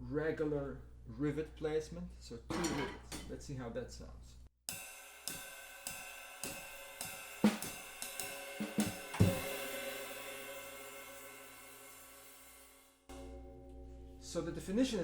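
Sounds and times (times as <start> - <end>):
riveted ride cymbal pattern: 4.7 - 15.0
drum hits: 6.5 - 10.1.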